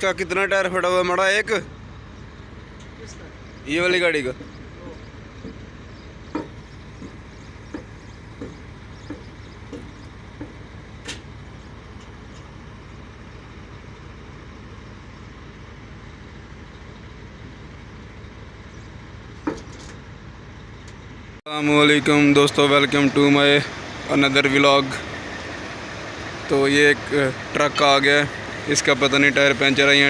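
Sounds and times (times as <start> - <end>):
heavy truck engine idling: 0.0 - 30.0
short knocks: 6.3 - 11.4.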